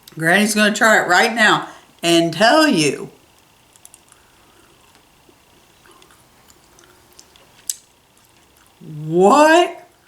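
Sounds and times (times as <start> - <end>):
person chewing: 5.8 - 8.8.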